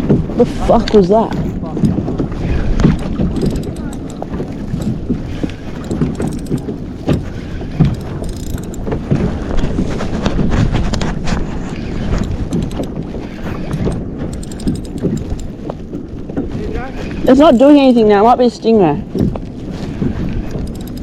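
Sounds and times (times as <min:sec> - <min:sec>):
water sloshing against kayak hull: 0:00.0 - 0:21.0
wind on microphone: 0:00.0 - 0:21.0
scattered knocks and taps: 0:02.8 - 0:09.2, 0:12.2 - 0:13.0, 0:13.7 - 0:15.6, 0:20.5 - 0:21.0.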